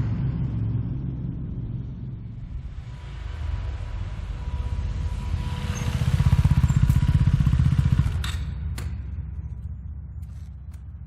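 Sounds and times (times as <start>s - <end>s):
motorcycle passing by: 0.0s - 8.8s.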